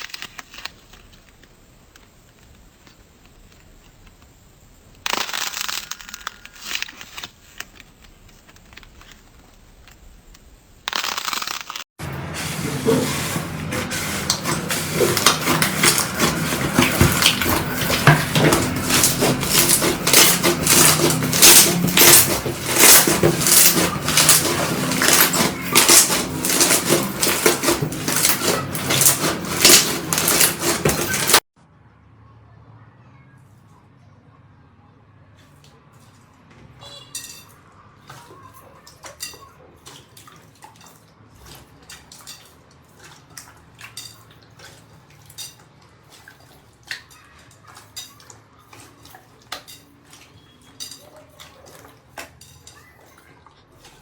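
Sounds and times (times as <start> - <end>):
slime squelching: 4.9 - 31.4, 38.0 - 54.0
slime crackling and popping: 14.2 - 31.4.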